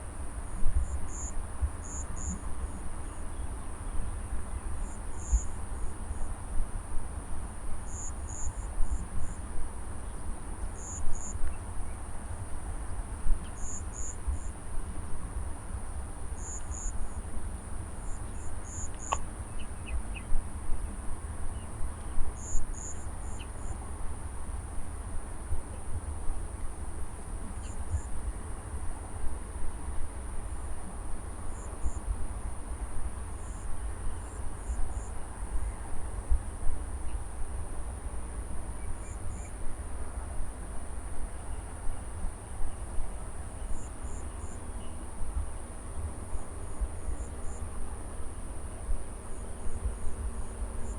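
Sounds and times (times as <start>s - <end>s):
insects droning: 0.3s - 6.5s, 7.1s - 50.9s
insect chirps: 0.8s - 3.4s, 4.7s - 6.3s, 7.9s - 9.4s, 10.8s - 11.4s, 13.4s - 14.6s, 16.4s - 17.3s, 18.0s - 20.3s, 22.4s - 23.8s, 43.6s - 45.0s.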